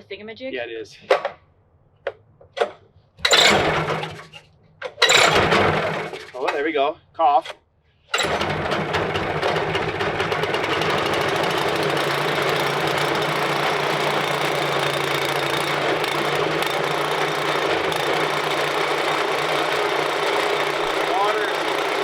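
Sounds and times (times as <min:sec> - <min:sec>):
sawmill gas engine running: 0:03.2 - 0:04.4, 0:05.0 - 0:06.6, 0:08.1 - 0:22.0.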